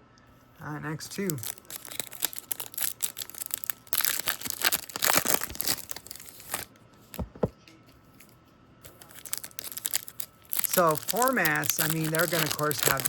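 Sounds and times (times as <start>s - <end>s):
card pack wrappers crinkling and tearing: 0.8s - 7.2s, 8.9s - 13.0s
soft handling thumps: 7.0s - 7.6s.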